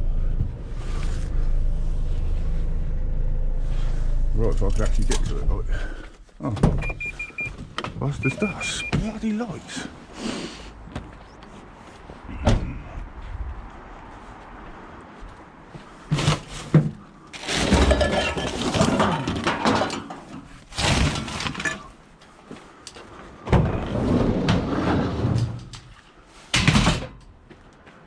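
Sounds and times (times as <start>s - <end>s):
rattling clatter of scrap: 16.1s - 21.9s.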